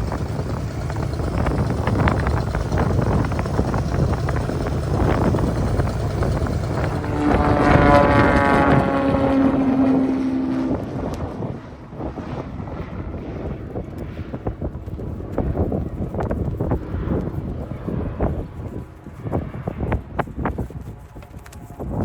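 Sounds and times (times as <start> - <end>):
long held pitched tone: 0.0 - 12.7
wind buffeting microphone: 0.0 - 22.0.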